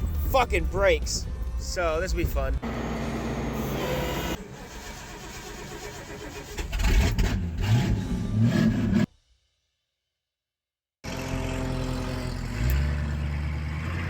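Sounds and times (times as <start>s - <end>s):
car engine revving: 2.6s - 9.1s, 11.0s - 14.0s.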